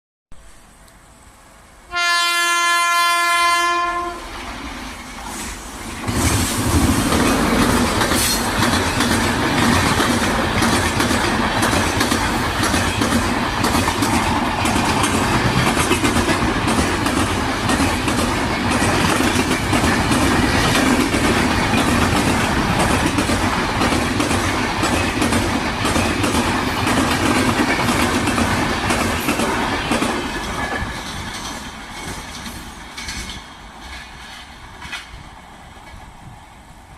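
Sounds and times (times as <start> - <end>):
locomotive horn blast: 1.9 - 4.3
train wheels clacking on rails: 4.0 - 36.3.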